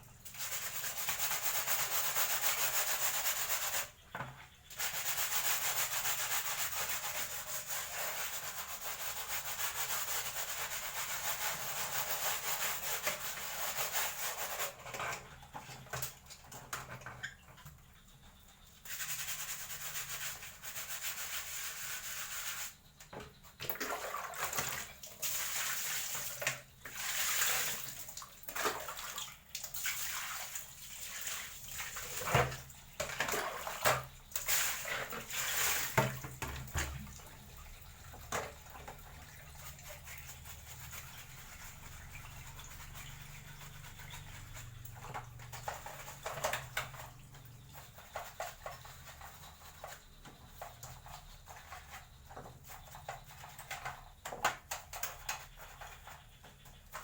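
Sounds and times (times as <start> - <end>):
water hissing in short bursts: 33.6 - 50.1.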